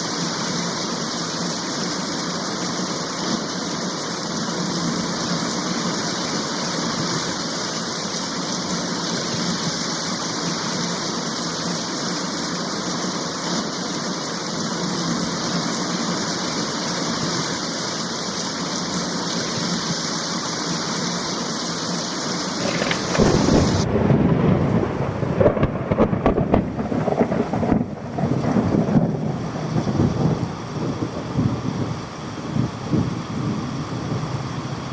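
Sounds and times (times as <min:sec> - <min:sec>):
heavy rain hissing: 0:00.0 - 0:34.9
rumble of thunder: 0:22.6 - 0:34.9.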